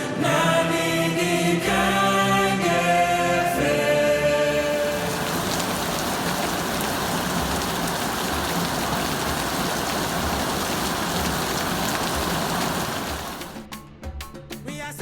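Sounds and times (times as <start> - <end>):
heavy rain on hard surfaces: 4.6 - 13.6.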